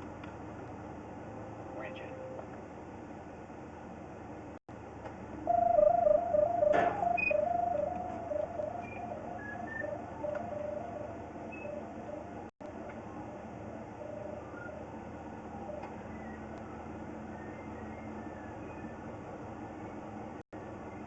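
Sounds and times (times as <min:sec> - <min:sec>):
electronic beeping tones: 0:05.5 - 0:12.2.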